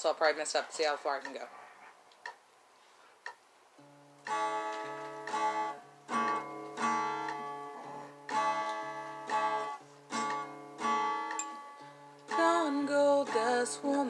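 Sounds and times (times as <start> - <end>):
acoustic guitar strumming chords: 3.8 - 14.0.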